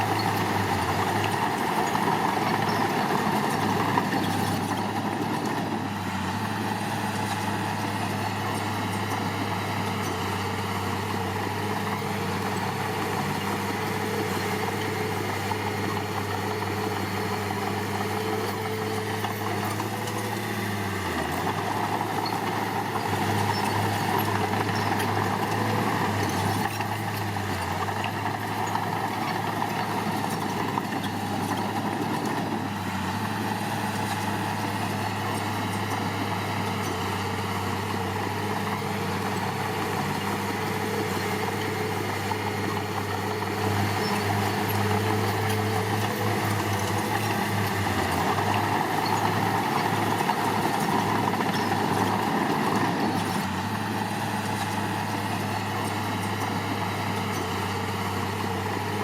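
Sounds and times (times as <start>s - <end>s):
construction machinery diesel engine: 0.0s - 59.0s.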